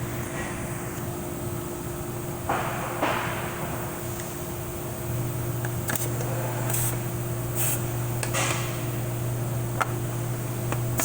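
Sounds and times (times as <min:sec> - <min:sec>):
steady low hum: 0:00.0 - 0:11.0
compressed air puffs hissing: 0:07.6 - 0:07.9.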